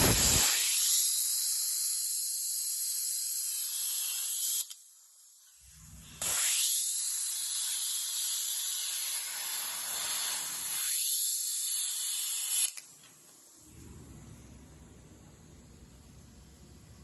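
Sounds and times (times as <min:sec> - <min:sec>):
plasma cutter torch hissing: 0:00.0 - 0:05.4, 0:06.0 - 0:13.6.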